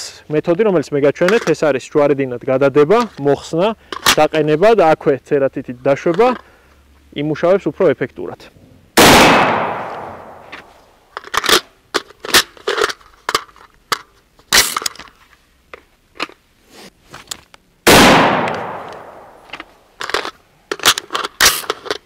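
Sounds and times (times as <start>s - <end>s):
rifle shot echoing: 9.0s - 10.6s, 17.9s - 19.4s
rifle action metallic clicks: 18.0s - 22.0s.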